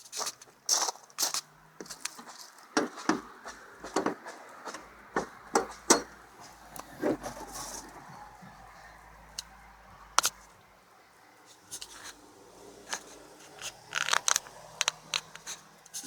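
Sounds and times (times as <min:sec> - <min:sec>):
car hood clicks and knocks: 0:03.9 - 0:04.2, 0:05.2 - 0:06.2.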